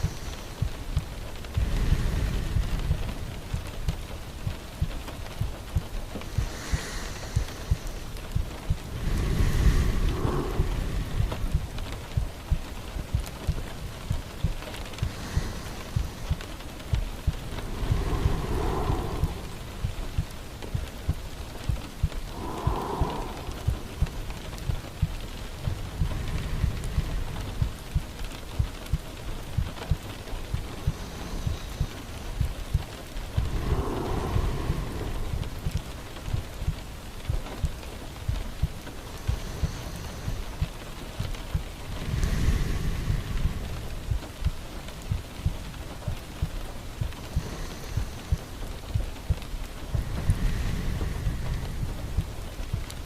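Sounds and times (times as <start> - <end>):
steady rain: 0.0 - 53.0
low soft thumps: 7.3 - 39.3.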